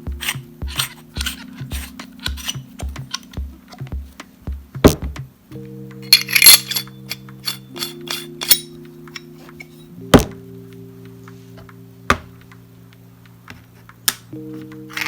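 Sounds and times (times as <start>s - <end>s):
soft background music: 0.0s - 15.0s
metal parts clinking: 0.2s - 3.2s, 6.1s - 8.7s.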